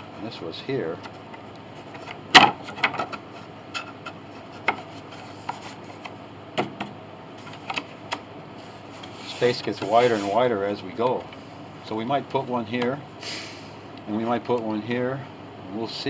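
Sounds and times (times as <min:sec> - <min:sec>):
wooden panels knocking and clicking: 0:01.9 - 0:04.9.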